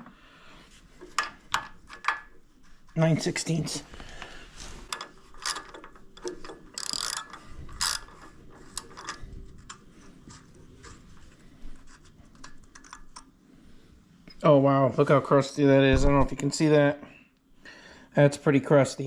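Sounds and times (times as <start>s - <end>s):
ratchet wrench clicking: 4.9s - 8.2s
ratchet wrench rasps: 4.9s - 9.2s.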